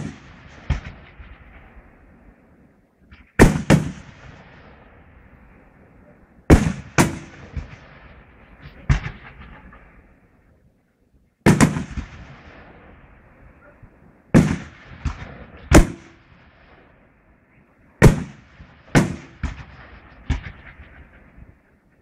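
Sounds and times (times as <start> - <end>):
fireworks bursting with echo: 0.0 - 10.4, 11.4 - 17.3, 17.9 - 21.9.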